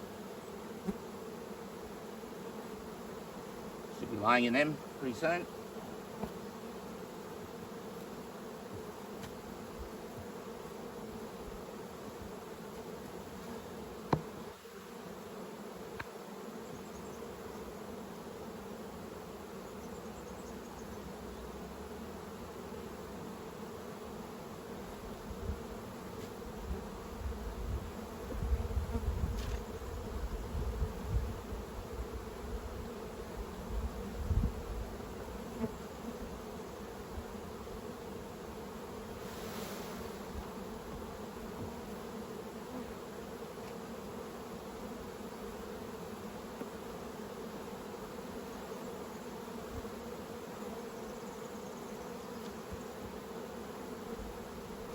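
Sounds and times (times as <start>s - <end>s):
honey bees buzzing: 0.0s - 54.9s.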